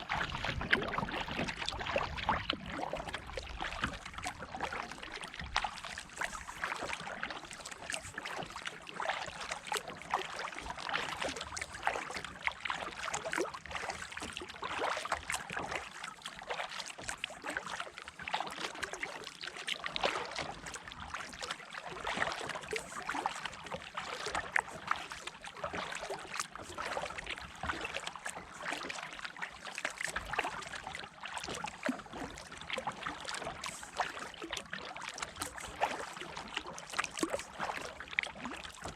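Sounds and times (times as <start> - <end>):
paddle splashing water: 0.0 - 38.9.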